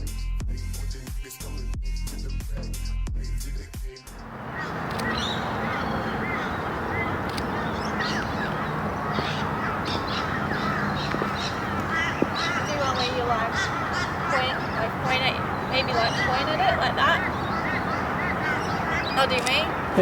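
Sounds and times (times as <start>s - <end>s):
flock of birds calling: 4.3s - 20.0s.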